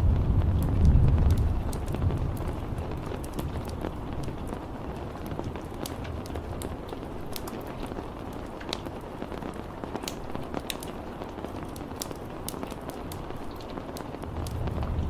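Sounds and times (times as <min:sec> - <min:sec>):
raindrops ticking on surface: 0:00.0 - 0:15.0
steady rainfall: 0:00.0 - 0:15.0.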